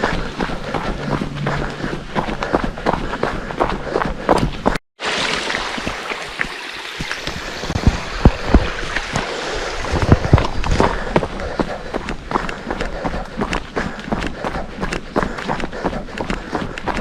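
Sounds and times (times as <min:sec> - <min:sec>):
running footsteps on a trail: 0:00.0 - 0:04.8, 0:05.8 - 0:17.0
stream water flowing: 0:05.0 - 0:11.6.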